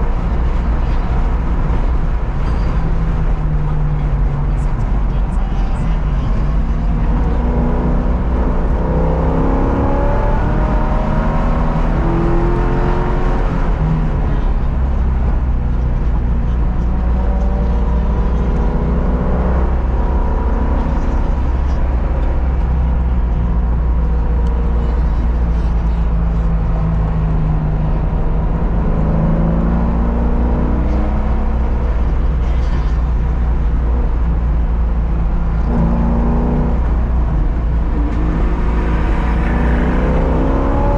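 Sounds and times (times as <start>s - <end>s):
car engine accelerating hard: 0.0s - 40.9s.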